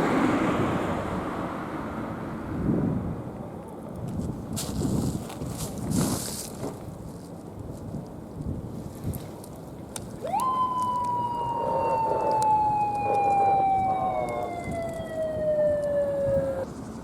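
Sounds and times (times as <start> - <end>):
police siren wail: 10.2 - 16.7.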